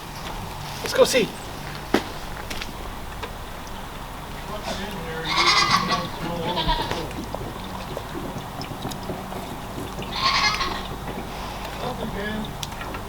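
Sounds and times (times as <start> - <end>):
goat bleating: 4.6 - 11.6.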